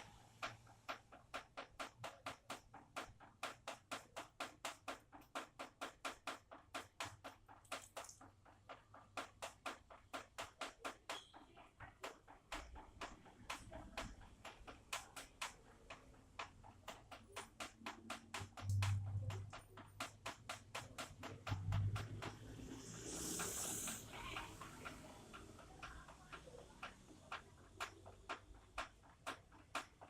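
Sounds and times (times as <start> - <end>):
water drops dripping: 0.0 - 30.0.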